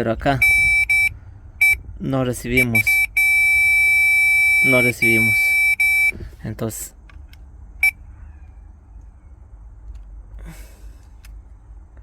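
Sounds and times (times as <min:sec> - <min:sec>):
low steady hum: 0:00.0 - 0:12.0
short electronic beep: 0:00.4 - 0:01.8, 0:02.6 - 0:06.2.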